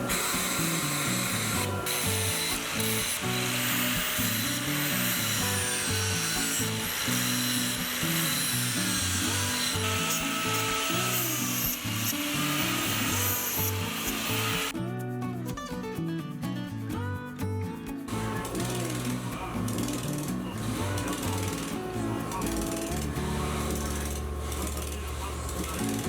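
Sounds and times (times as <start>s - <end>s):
power sander grinding metal: 0.0s - 14.8s, 18.1s - 26.0s
background music: 0.0s - 26.0s.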